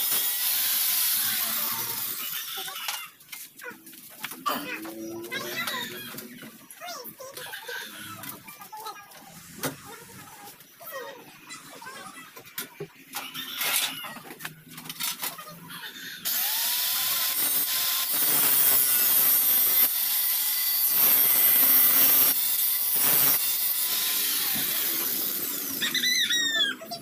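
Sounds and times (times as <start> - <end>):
angle grinder on sheet metal: 0.0 - 2.7, 16.3 - 26.8.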